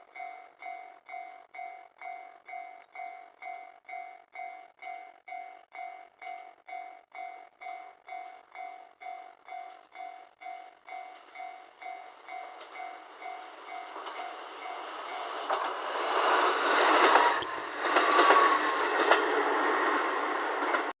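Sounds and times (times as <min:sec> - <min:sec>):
level crossing alarm bell dinging: 0:00.1 - 0:15.6
train passing: 0:01.6 - 0:21.0
wheels clacking over rail joints: 0:10.9 - 0:20.9.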